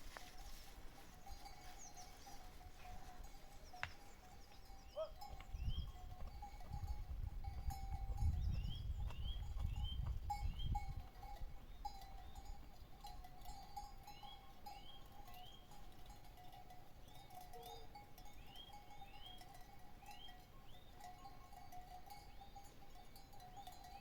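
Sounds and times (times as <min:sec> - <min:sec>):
livestock bells clinking: 0:00.0 - 0:24.0
bird chirping: 0:00.2 - 0:06.0, 0:08.3 - 0:10.8, 0:14.1 - 0:15.7, 0:18.4 - 0:21.3.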